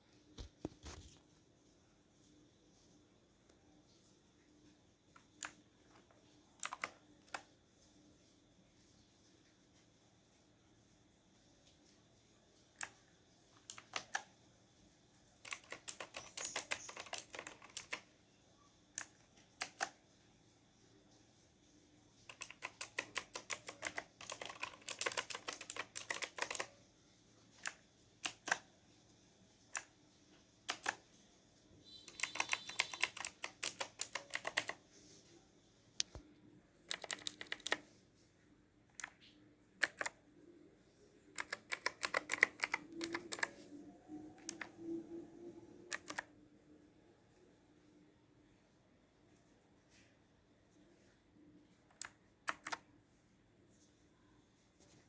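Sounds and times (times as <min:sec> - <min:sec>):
clicky mechanical keyboard typing: 0:05.2 - 0:07.5, 0:13.6 - 0:14.3, 0:15.4 - 0:18.1, 0:19.0 - 0:20.0, 0:22.2 - 0:26.8, 0:27.5 - 0:28.7, 0:29.7 - 0:30.0, 0:30.6 - 0:31.1, 0:31.9 - 0:34.8, 0:36.9 - 0:37.9, 0:38.9 - 0:40.2, 0:41.3 - 0:45.1, 0:45.8 - 0:46.3, 0:51.9 - 0:52.9.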